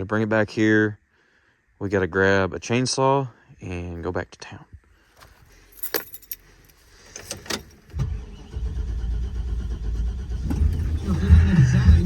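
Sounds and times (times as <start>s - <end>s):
pickup engine starting and running: 6.9s - 12.0s.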